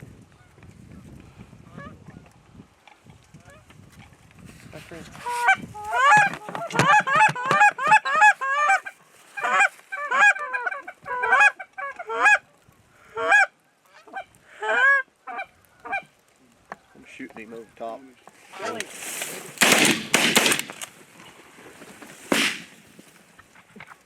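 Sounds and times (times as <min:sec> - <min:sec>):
geese honking: 0:05.2 - 0:16.2, 0:16.8 - 0:19.0.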